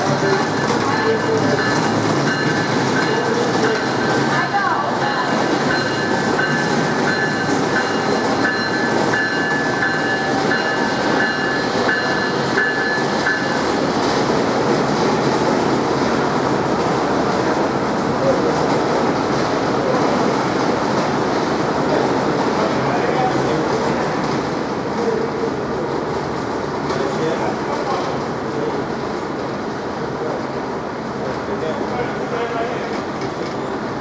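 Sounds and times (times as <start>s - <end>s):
passenger train rumbling: 0.0s - 34.0s
repeating high ringing tone: 0.2s - 13.7s.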